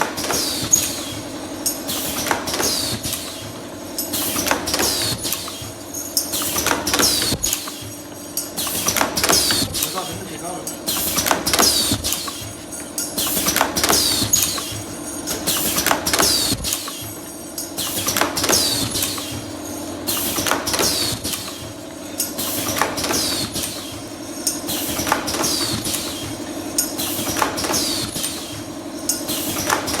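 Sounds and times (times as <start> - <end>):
mechanical clicks and clacks: 0.0 - 30.0.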